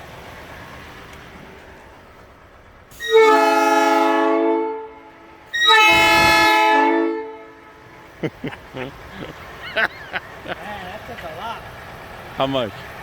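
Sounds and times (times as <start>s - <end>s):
air train horn blasts: 2.9s - 8.1s.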